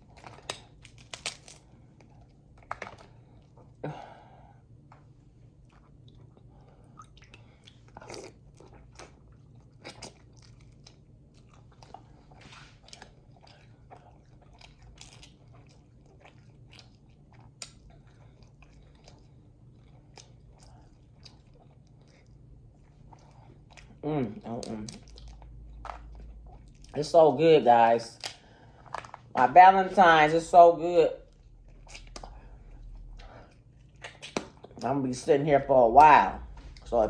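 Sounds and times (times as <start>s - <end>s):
small food crunches: 0.0s - 3.6s
person chewing and biting: 0.0s - 3.8s, 4.8s - 27.0s, 31.3s - 34.8s
wet mouth clicks: 31.8s - 32.4s, 33.9s - 34.8s.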